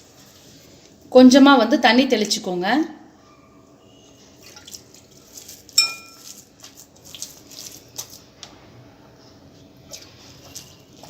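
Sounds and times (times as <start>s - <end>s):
spoon clinking on bowl: 5.8s - 6.3s.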